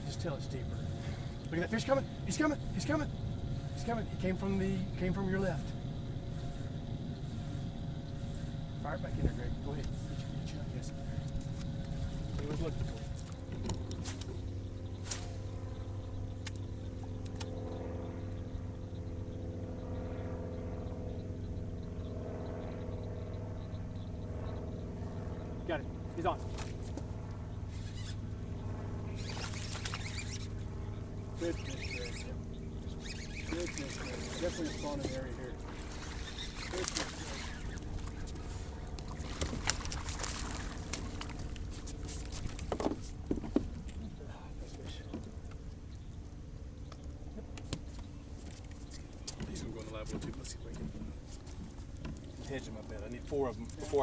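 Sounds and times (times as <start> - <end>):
boat motor humming: 0.0 - 54.0
light water splashes: 29.1 - 30.7, 32.9 - 44.1.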